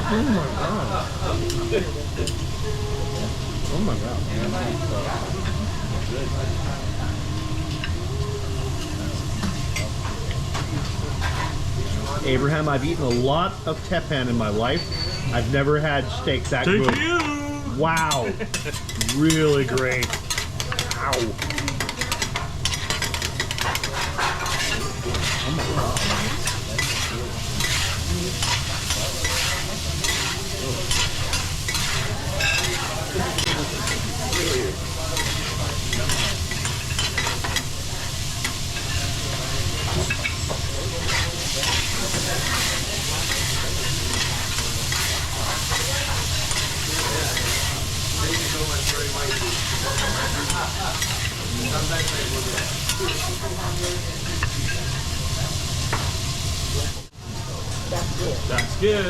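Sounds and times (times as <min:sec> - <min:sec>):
food sizzling on a griddle: 0:00.0 - 0:59.0
metal spatulas scraping and tapping: 0:18.0 - 0:37.7.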